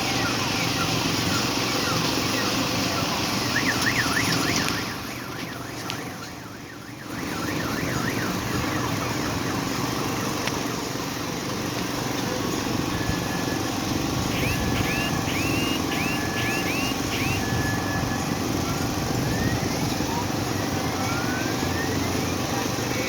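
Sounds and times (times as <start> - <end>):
outdoor crowd din: 0.0 - 23.0
warbling electronic siren tone: 12.9 - 23.0.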